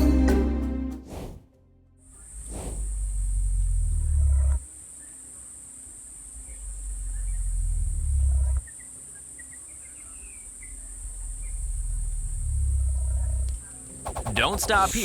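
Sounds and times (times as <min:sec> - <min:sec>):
faint bird chirps: 0:04.0 - 0:14.9.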